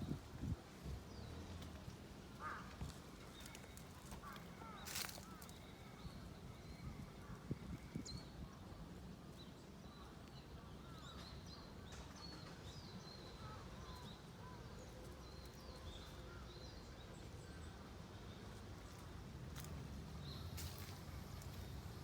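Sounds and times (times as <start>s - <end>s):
small birds chirping: 2.8s - 7.0s.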